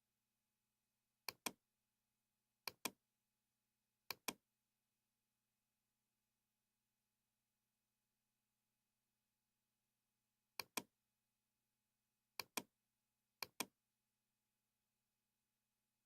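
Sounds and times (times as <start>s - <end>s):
computer mouse clicking: 1.3s - 1.6s, 2.6s - 3.0s, 4.1s - 4.4s, 10.6s - 10.9s, 12.4s - 12.7s, 13.4s - 13.7s.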